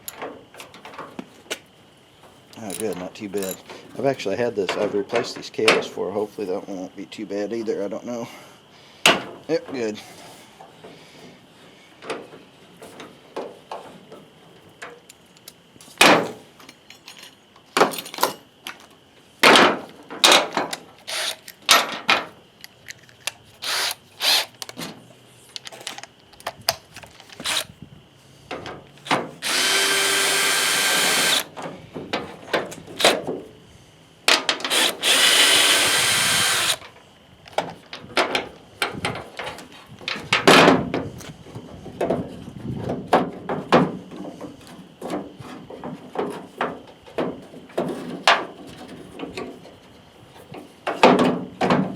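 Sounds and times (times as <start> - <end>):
tools and metal parts clicking: 0.0 - 0.2, 2.6 - 3.6
power drill running: 21.1 - 21.4, 23.6 - 24.5, 27.4 - 27.7, 29.4 - 31.5, 34.7 - 36.8.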